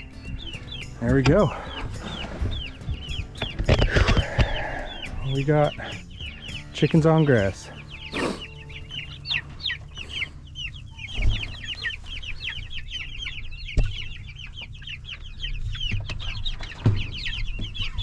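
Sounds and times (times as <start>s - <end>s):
chicks peeping: 0.0s - 18.0s.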